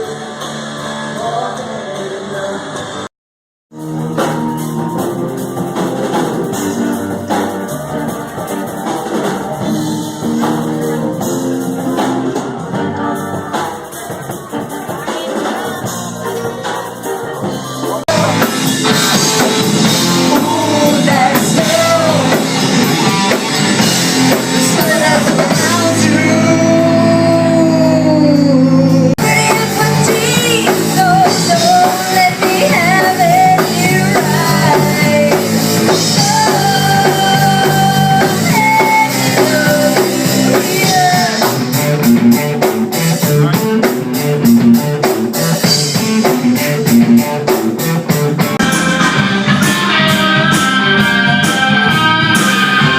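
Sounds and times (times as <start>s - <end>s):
rock music with drums and guitar: 3.7s - 52.9s
person singing long notes: 18.1s - 23.4s, 24.5s - 41.7s.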